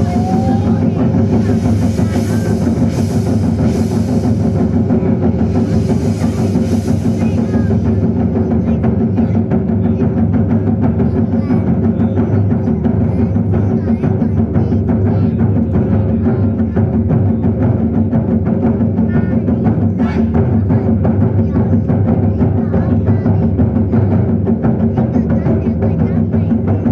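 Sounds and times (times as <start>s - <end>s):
high shimmering wash: 0.0s - 9.5s
large drums playing fast: 0.0s - 26.9s.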